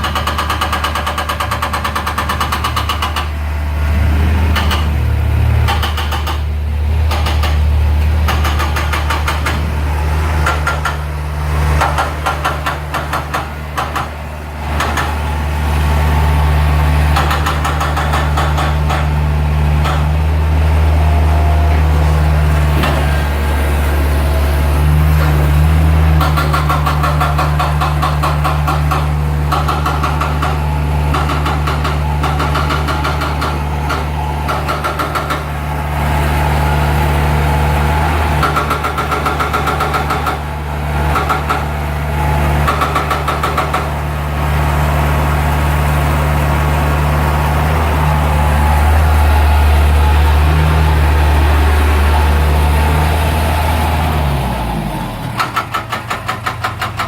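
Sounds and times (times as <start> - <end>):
large engine running: 0.0 - 57.0.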